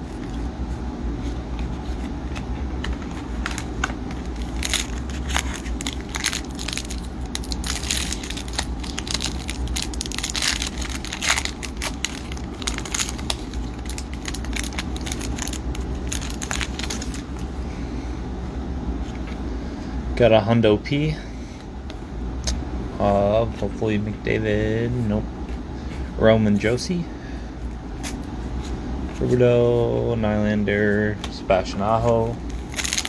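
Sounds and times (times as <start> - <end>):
plastic wrapper crinkling and tearing: 2.8 - 17.5, 32.4 - 33.0.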